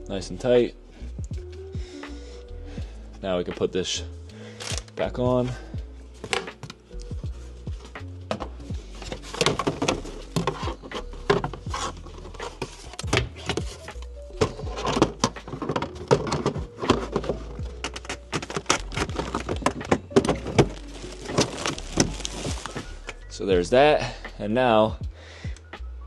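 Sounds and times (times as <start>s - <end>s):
background music: 0.0s - 26.0s
cover knocking and clicking into place: 8.3s - 8.5s, 9.3s - 11.6s, 14.4s - 20.8s.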